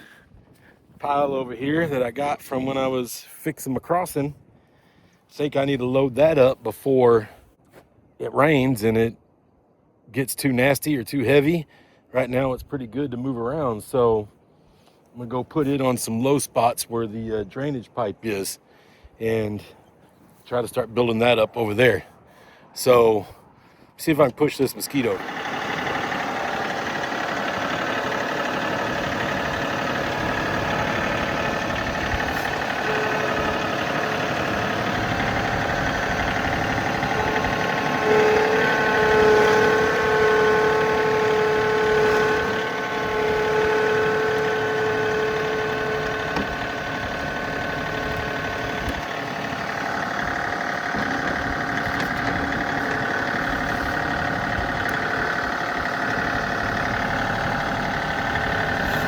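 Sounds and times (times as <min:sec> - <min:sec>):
tractor engine running: 0:24.3 - 0:59.0
steady whine: 0:24.8 - 0:59.0.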